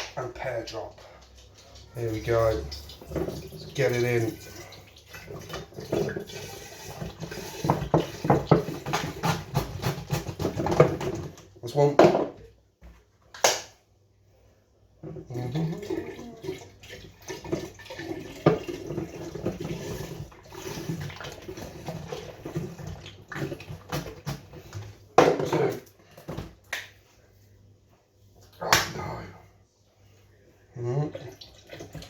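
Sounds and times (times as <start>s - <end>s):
juice pouring into vessel: 2.0s - 8.8s, 15.2s - 23.9s.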